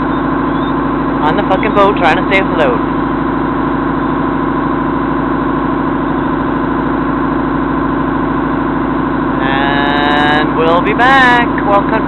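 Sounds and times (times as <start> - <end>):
boat engine running: 0.0 - 12.0.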